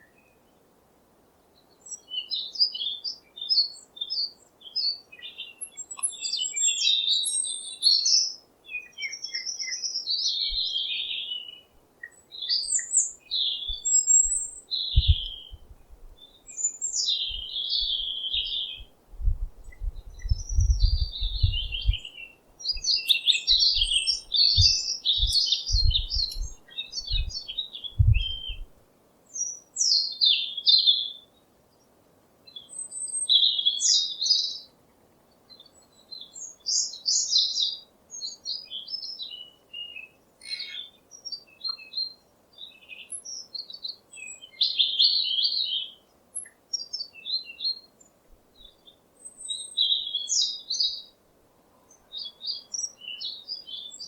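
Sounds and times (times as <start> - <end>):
songbirds chirping: 0.0 - 54.0
low thuds: 19.2 - 22.1, 24.6 - 27.3, 28.0 - 28.7.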